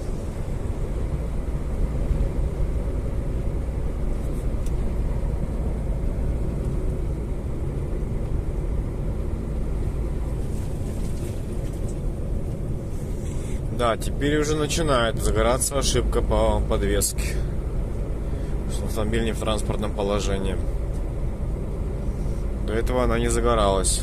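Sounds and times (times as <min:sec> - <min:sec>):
vehicle engine and road rumble: 0:00.0 - 0:24.0.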